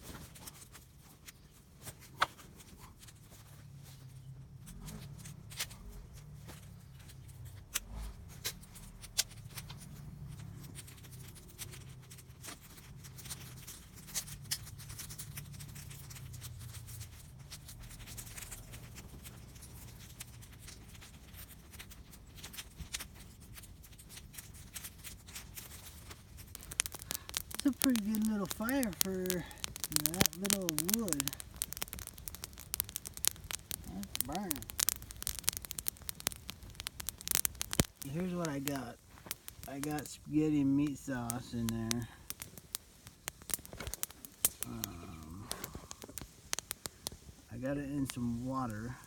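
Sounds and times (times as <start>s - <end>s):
campfire crackling: 5.2s - 49.0s
sharp pops: 25.6s - 49.0s.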